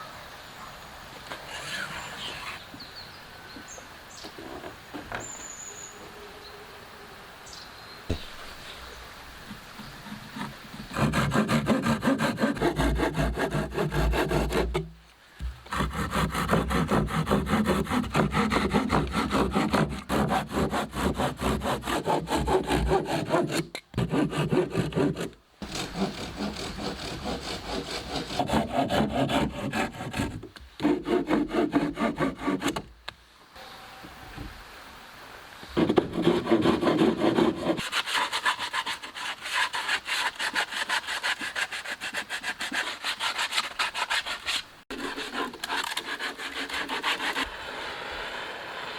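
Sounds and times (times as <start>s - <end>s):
hand saw cutting wood: 10.0s - 32.9s, 35.8s - 47.6s.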